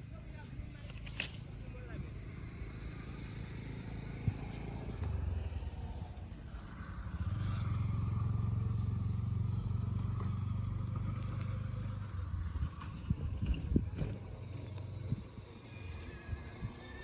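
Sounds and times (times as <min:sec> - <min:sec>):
small engine running: 0:00.0 - 0:17.0.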